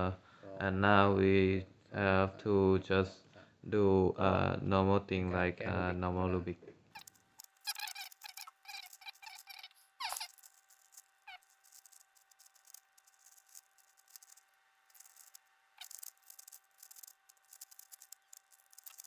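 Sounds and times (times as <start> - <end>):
faint steady hum: 0.0 - 19.0
puzzle cube clicking and rattling: 7.0 - 19.0.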